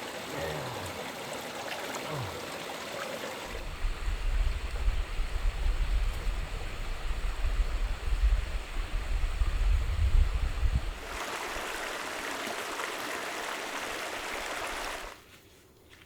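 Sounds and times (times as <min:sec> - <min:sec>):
flowing water: 0:00.0 - 0:15.2
gusty low rumble on microphone: 0:03.5 - 0:11.1.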